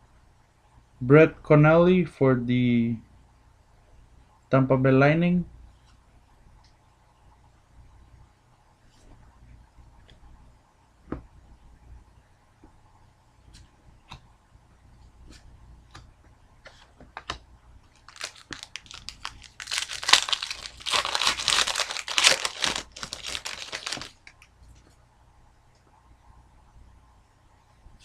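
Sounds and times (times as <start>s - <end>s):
foil wrapper crinkling and tearing: 17.9s - 24.5s.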